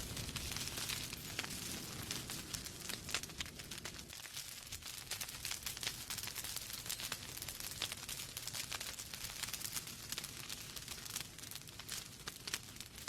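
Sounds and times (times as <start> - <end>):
soft rush of flame: 0.0 - 12.9
wood fire crackling and popping: 0.0 - 13.0.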